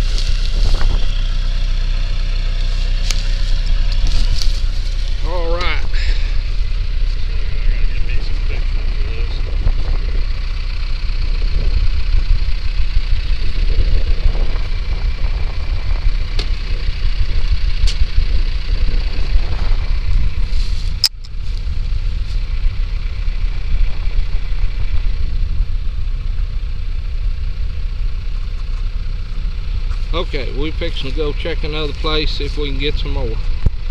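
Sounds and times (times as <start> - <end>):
vehicle engine idling: 0.0 - 33.9
sharp click: 21.0 - 21.4.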